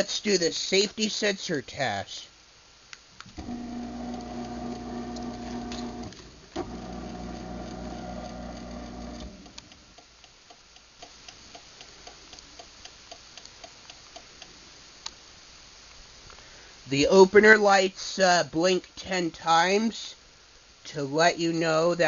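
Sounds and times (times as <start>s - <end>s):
steady clicking: 3.2s - 15.2s
garage door opener motor running: 3.3s - 9.6s.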